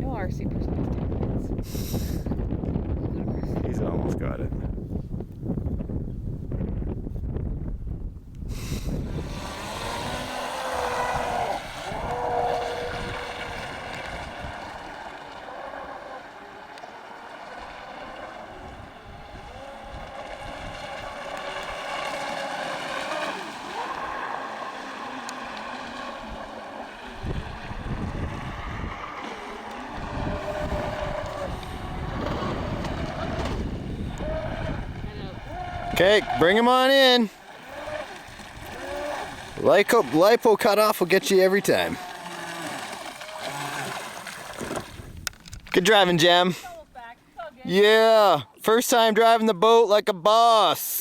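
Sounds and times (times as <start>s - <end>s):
wind buffeting microphone: 0.0s - 47.7s
electric motor whining: 8.6s - 45.4s.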